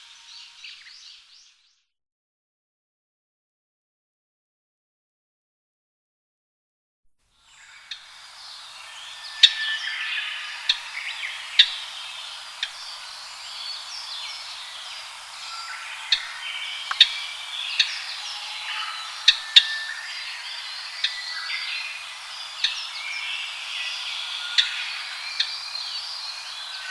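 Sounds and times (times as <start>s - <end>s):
birds calling and whistling: 7.5s - 26.9s.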